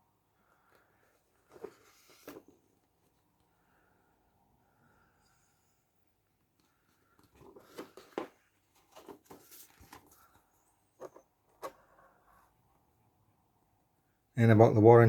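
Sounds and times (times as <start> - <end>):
paper rustling and crinkling: 1.3 - 3.2, 7.1 - 12.0.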